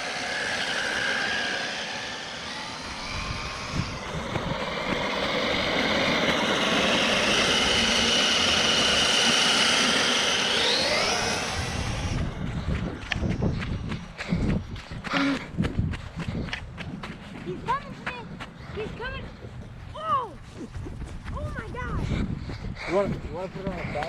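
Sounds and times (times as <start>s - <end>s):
rc car motor whining: 0.0s - 14.2s.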